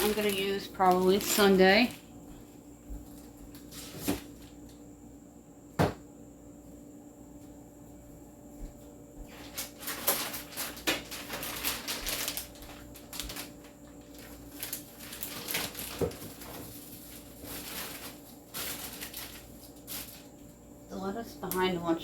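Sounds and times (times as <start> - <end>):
food packages rustling: 0.0 - 2.0, 3.0 - 4.7, 9.2 - 20.6
items knocking on fridge shelves: 5.7 - 6.1, 15.2 - 19.1.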